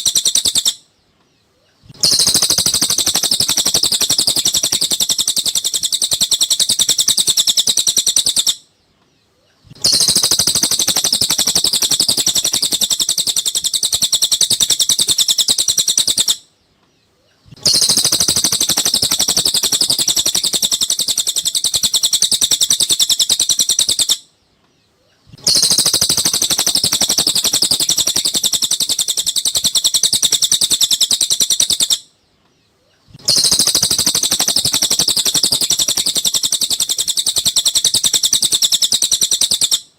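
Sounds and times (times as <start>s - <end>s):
songbird chattering song: 0.0s - 39.9s.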